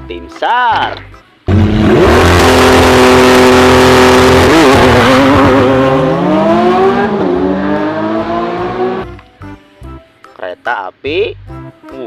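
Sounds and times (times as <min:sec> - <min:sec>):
car engine revving: 0:01.5 - 0:09.2.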